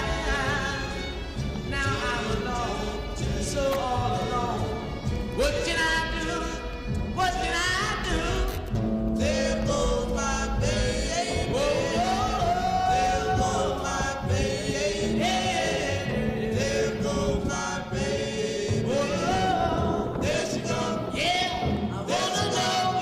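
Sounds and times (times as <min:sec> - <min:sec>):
low bass line: 0:00.0 - 0:22.2.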